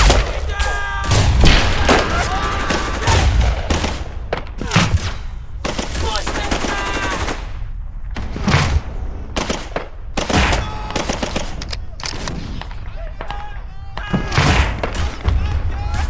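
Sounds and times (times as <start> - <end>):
machine-gun and rifle fire: 1.1 - 7.6.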